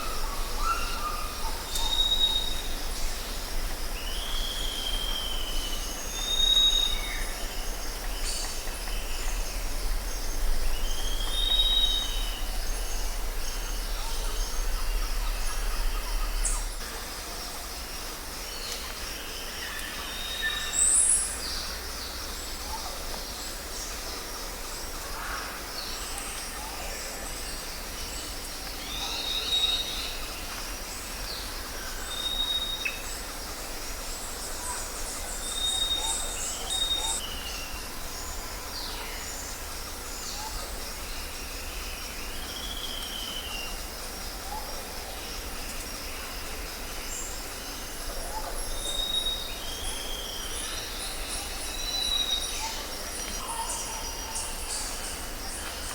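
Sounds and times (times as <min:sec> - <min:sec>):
low steady rumble: 0:07.0 - 0:17.5.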